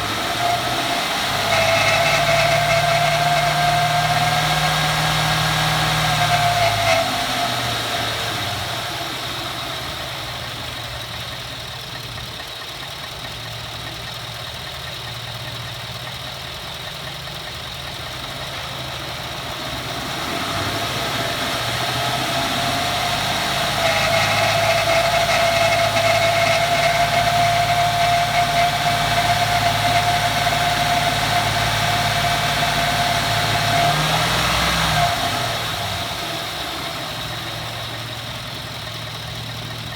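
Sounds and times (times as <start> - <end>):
truck engine revving: 0.0 - 11.4, 17.1 - 39.9
high-pitched engine whine: 17.9 - 39.9.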